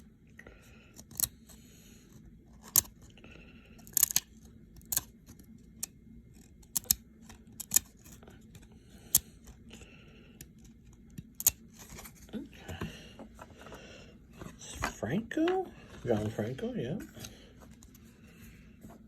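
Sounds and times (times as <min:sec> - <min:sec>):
cards snapping and clicking: 0:03.9 - 0:05.1, 0:06.6 - 0:07.0, 0:07.6 - 0:08.0.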